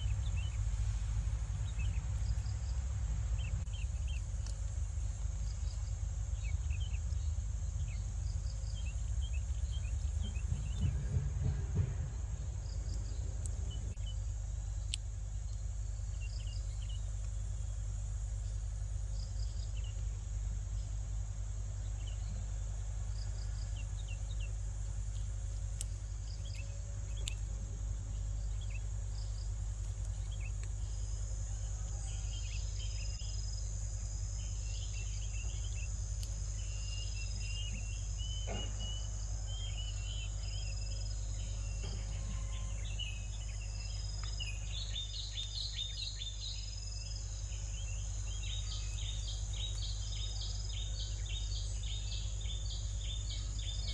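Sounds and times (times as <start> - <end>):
high insect drone: 0.0 - 53.9
bird chirps: 30.1 - 53.9.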